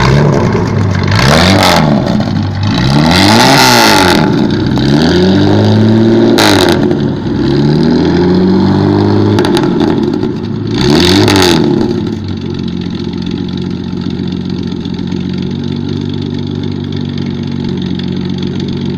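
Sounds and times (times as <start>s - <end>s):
motorcycle engine revving: 0.0s - 13.2s.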